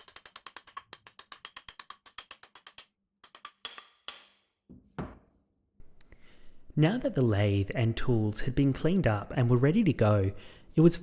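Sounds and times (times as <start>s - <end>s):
hammer knocking wooden handle: 0.0s - 5.3s.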